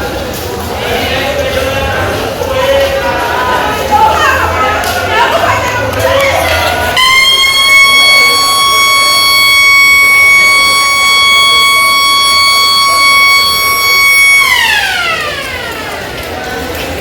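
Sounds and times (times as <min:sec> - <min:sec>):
electric siren steady high tone: 0:07.0 - 0:16.2.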